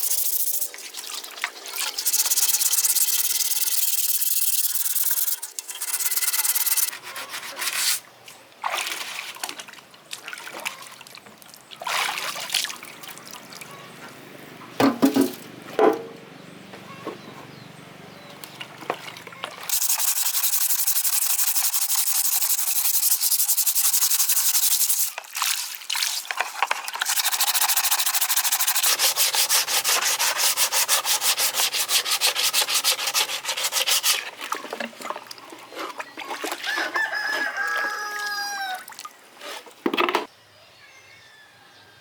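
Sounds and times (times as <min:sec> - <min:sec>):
hand sanding strokes: 0:02.0 - 0:08.0, 0:19.7 - 0:25.2, 0:27.1 - 0:34.3.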